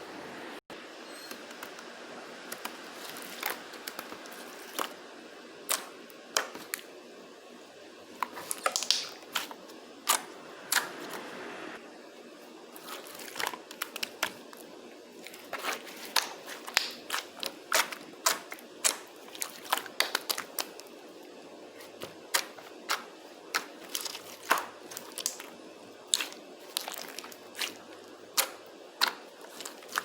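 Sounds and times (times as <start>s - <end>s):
slime popping and clicking: 8.5s - 9.2s.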